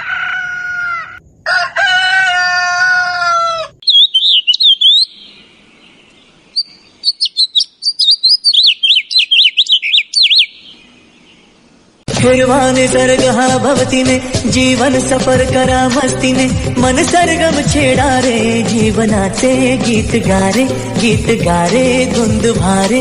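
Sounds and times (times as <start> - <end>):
rooster crowing: 0.0 - 3.8
songbird chirping: 3.2 - 12.1.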